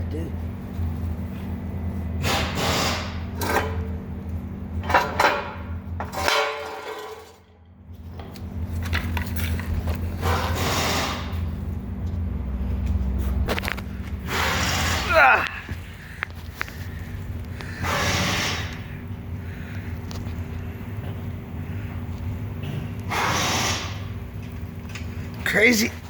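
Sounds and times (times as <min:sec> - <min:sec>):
steady low hum: 0:00.0 - 0:26.0
metal clanks and scrapes of tools: 0:02.2 - 0:03.9, 0:04.8 - 0:07.4.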